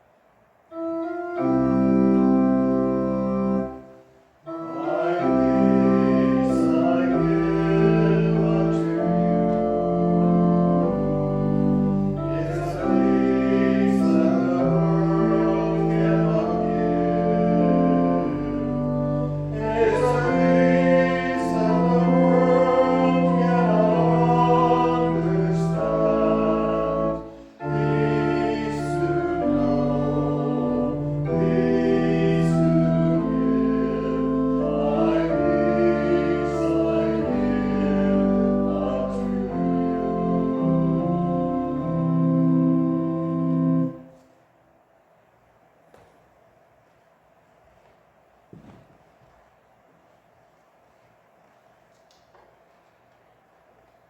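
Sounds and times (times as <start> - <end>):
organ playing a hymn: 0.7 - 44.3
people singing: 4.5 - 9.3, 12.2 - 18.7, 19.5 - 41.9.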